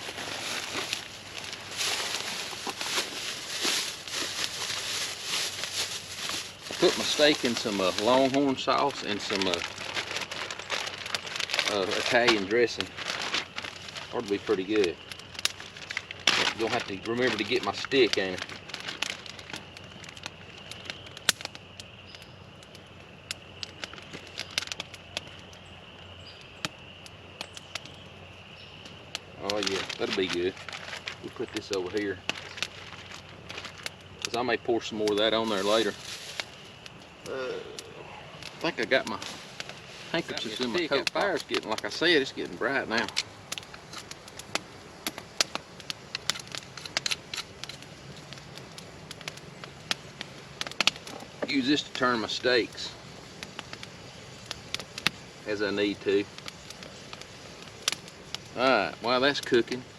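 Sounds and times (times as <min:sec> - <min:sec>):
campfire crackling: 0:00.0 - 0:59.9
sharp pops of burning wood: 0:00.0 - 0:59.9.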